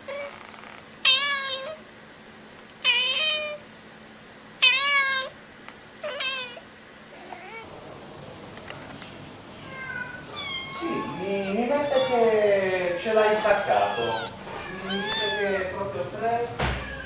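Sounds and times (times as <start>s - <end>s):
cat meowing: 0.0s - 1.8s, 2.8s - 3.6s, 4.6s - 5.4s, 6.0s - 6.6s, 7.2s - 7.7s, 9.6s - 12.4s, 13.1s - 15.8s.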